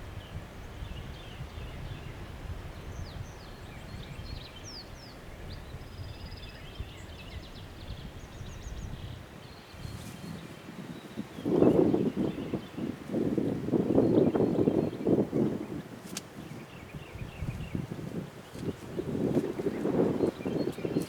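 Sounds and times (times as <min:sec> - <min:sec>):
wind rumble on microphone: 0:00.0 - 0:21.0
songbirds chirping: 0:00.2 - 0:21.0.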